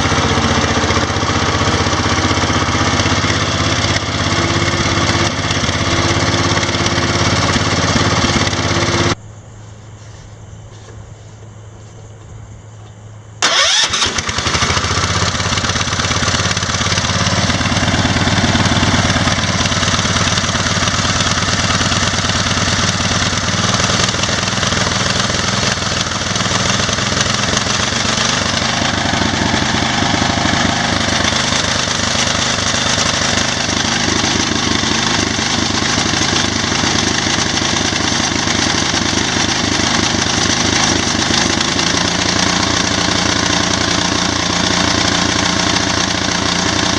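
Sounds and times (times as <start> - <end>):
garden tractor engine running: 0.0 - 9.2, 13.4 - 46.9.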